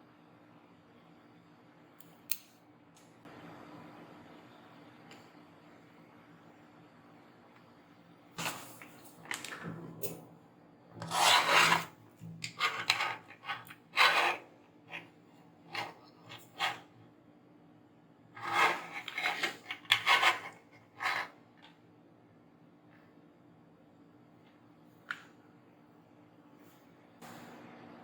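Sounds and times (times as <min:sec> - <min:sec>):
faint steady hum: 0:00.0 - 0:28.0
tool scraping circuit board: 0:11.0 - 0:15.1, 0:15.7 - 0:16.9, 0:18.4 - 0:21.4.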